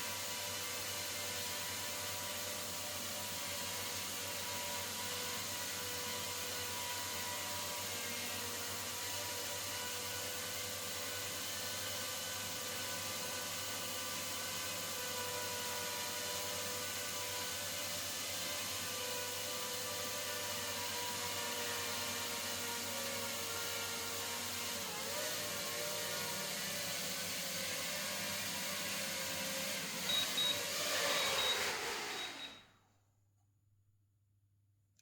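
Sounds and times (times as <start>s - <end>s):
drone propellers whirring: 29.9s - 32.6s.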